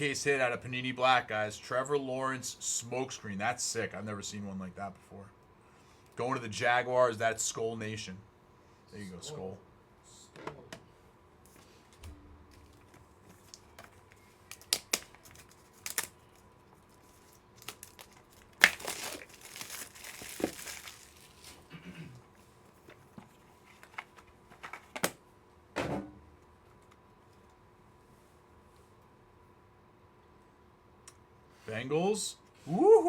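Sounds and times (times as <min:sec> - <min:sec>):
card pack wrapping tearing: 0:13.4 - 0:21.6.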